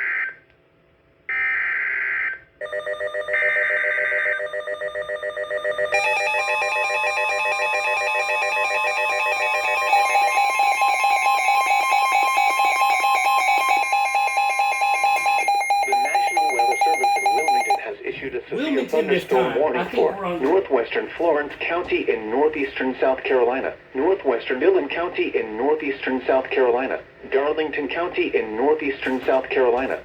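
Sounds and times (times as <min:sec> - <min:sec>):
pulsing weather radio alarm tones: 0:01.3 - 0:17.9.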